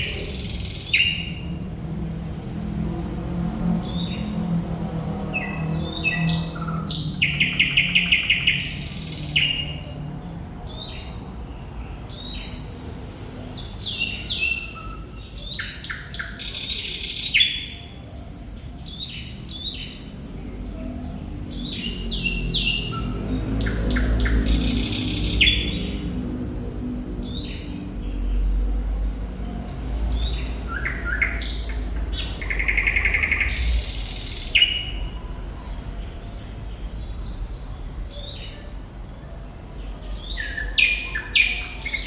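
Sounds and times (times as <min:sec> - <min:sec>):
nightingale singing: 0:00.0 - 0:01.6, 0:05.0 - 0:10.0, 0:13.5 - 0:26.2, 0:29.3 - 0:42.0.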